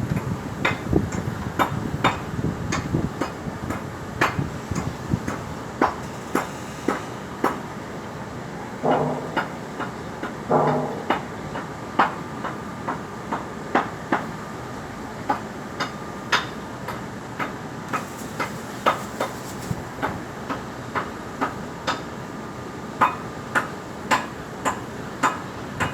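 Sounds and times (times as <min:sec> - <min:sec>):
loud knocks: 0:08.8 - 0:09.7, 0:10.5 - 0:11.3
hammer strikes ringing: 0:08.8 - 0:09.8, 0:10.5 - 0:11.3.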